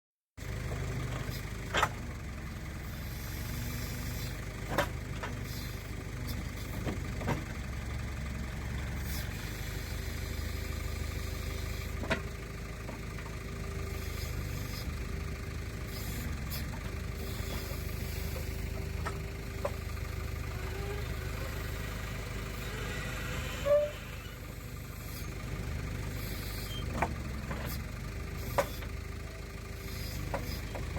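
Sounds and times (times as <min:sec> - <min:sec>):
diesel engine running: 0:00.4 - 0:30.9.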